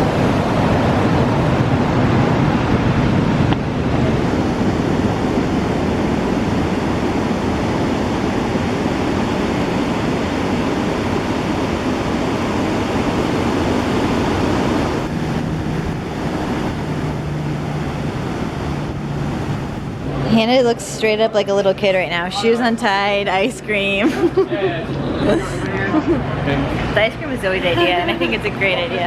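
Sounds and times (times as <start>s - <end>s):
ocean surf breaking: 0.0s - 20.8s
wind on microphone: 0.0s - 20.9s
steady low hum: 0.0s - 24.0s.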